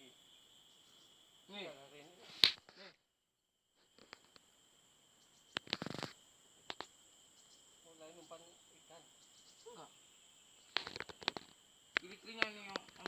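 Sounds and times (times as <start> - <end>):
insects chirring: 0.0 - 13.0
sharp clicks: 10.7 - 13.0.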